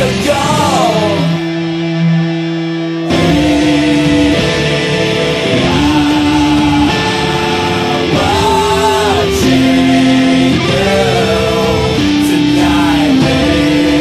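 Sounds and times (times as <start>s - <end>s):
song with guitar: 0.0s - 14.0s
long held melody notes: 1.0s - 8.2s.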